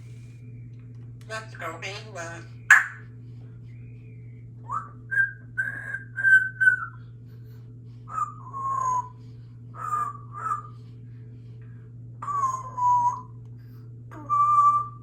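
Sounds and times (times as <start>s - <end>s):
steady low hum: 0.0s - 15.0s
parrot whistling: 2.5s - 3.1s, 4.1s - 7.0s, 8.1s - 10.8s, 12.2s - 13.4s, 14.1s - 15.0s.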